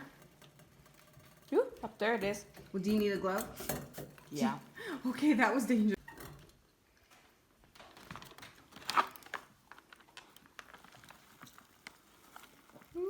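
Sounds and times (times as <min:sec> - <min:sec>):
meal pouch rustling and clicking: 0:07.7 - 0:13.0.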